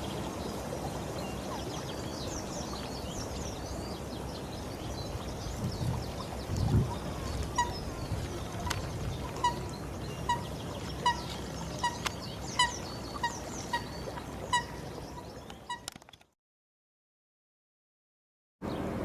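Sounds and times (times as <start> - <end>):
faint bird chirping: 1.2 - 15.9.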